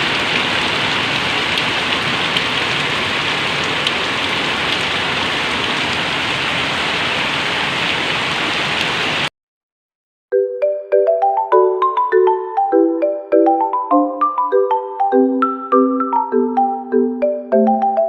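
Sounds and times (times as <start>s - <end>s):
heavy rain falling: 0.0s - 9.3s.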